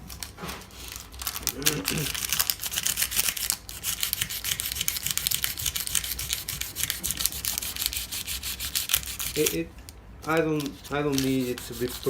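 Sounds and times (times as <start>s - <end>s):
sandpaper rubbing on metal: 1.6s - 9.7s, 10.6s - 12.0s.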